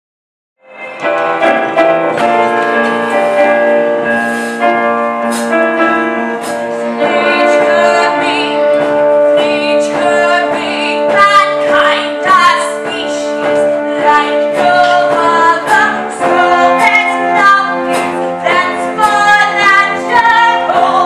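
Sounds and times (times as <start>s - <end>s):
keyboard chords and melody: 0.6s - 21.0s.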